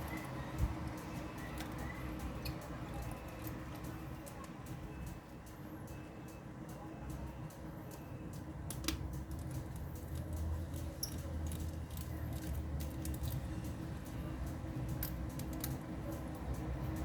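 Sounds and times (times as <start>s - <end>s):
tools and plastic parts clicking: 0.0s - 4.5s, 8.7s - 13.5s, 14.9s - 16.3s.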